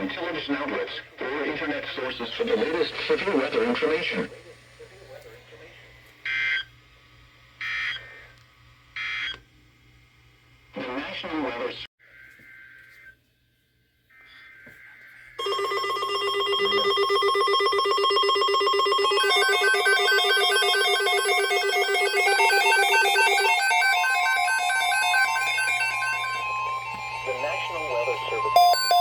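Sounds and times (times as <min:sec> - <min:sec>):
raspy digital data bursts: 0:01.6 - 0:04.3, 0:17.8 - 0:29.0
electronic alert signal trilling: 0:15.4 - 0:29.0.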